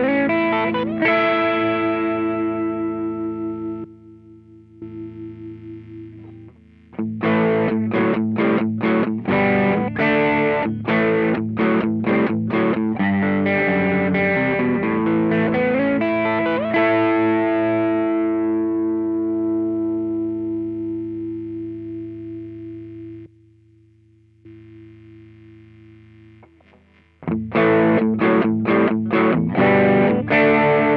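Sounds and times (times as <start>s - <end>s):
overdriven electric guitar riff: 0.0s - 23.4s, 24.5s - 30.9s.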